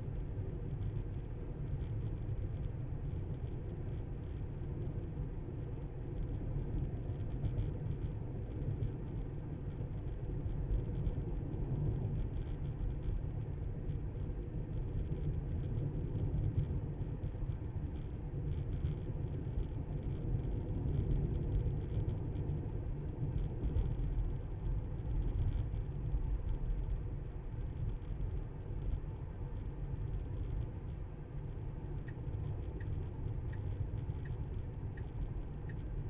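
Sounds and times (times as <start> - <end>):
car road rumble and tyre noise: 0.0 - 36.0.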